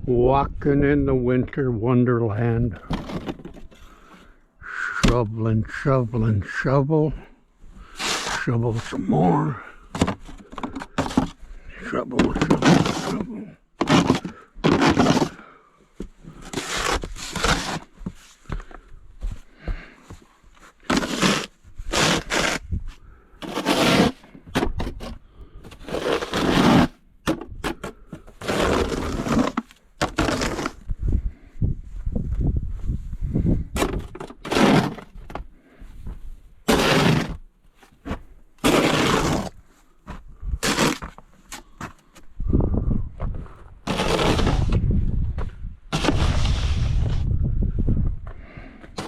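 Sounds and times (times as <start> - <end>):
snow shovel scraping snow: 7.8 - 15.4, 16.3 - 18.4, 20.8 - 27.0, 28.3 - 30.9, 33.8 - 35.2, 36.7 - 37.4, 38.1 - 39.6, 40.6 - 41.7, 43.8 - 44.8, 45.9 - 47.3.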